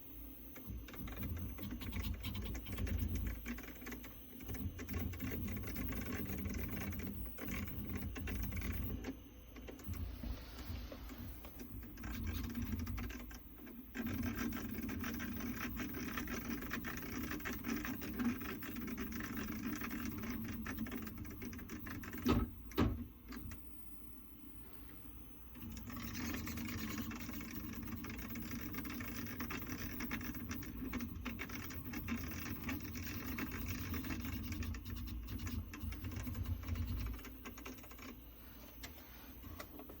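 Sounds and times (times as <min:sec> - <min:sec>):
printer motors humming: 0:00.0 - 0:40.0
printer axis rapid clicking: 0:00.9 - 0:10.0, 0:11.0 - 0:22.9, 0:25.6 - 0:38.2.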